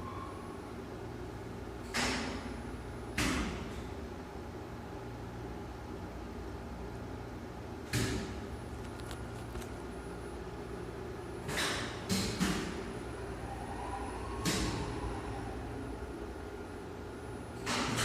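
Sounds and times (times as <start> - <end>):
electrical machinery hum: 0.0 - 18.0
faint motor whine: 0.0 - 18.0.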